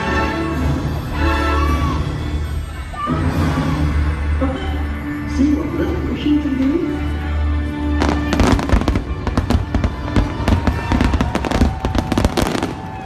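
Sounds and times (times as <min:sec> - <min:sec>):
fireworks bangs and crackles: 0:07.9 - 0:13.0.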